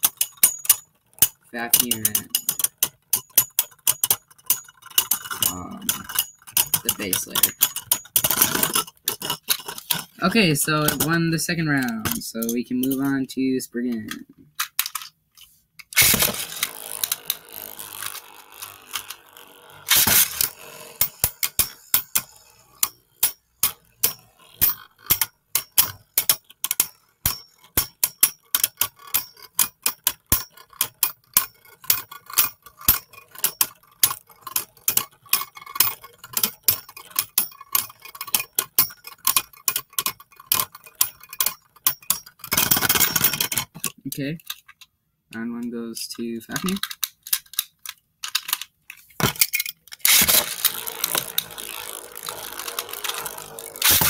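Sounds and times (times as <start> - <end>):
tops clacking together: 0.0 - 13.2, 13.9 - 45.4, 46.5 - 54.0
spinning tops clashing: 15.9 - 27.9, 49.2 - 54.0
spinning tops rushing: 16.0 - 24.7, 50.0 - 54.0.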